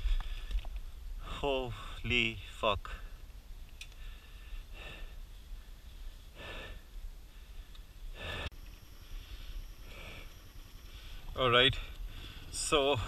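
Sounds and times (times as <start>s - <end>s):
person breathing: 0.0s - 0.6s, 3.9s - 13.0s
low steady rumble: 0.0s - 13.0s.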